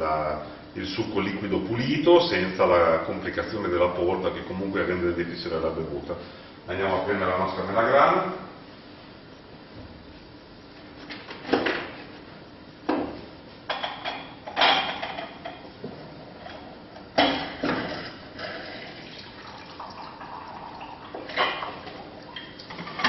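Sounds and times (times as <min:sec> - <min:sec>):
liquid trickling: 0:17.8 - 0:23.0.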